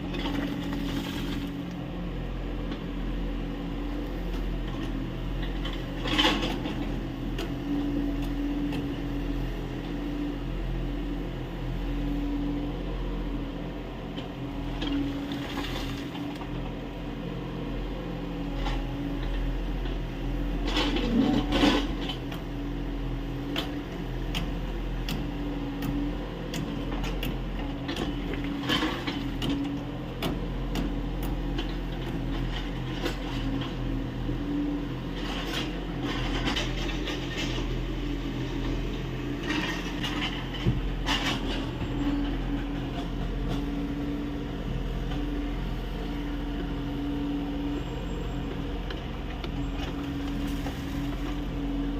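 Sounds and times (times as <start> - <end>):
excavator diesel engine running: 0.0 - 51.9.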